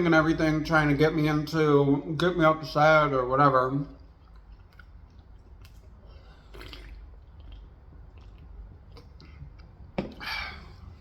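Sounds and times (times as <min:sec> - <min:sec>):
wet chewing mouth sounds: 0:04.0 - 0:09.9.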